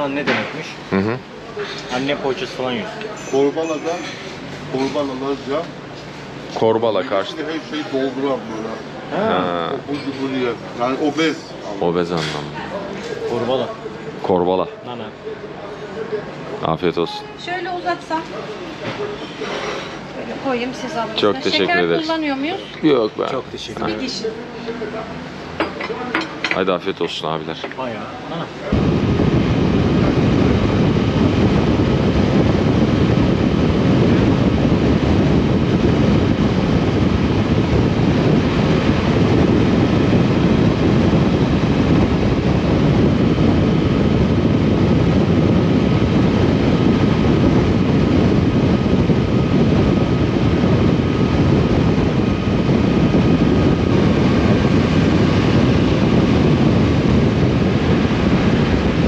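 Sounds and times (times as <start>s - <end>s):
wind rush on microphone: 19.8s - 24.3s, 28.6s - 59.0s.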